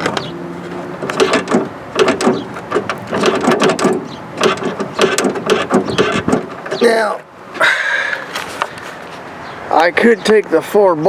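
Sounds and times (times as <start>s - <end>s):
tailgate latch clicking and rattling: 0.0s - 7.0s.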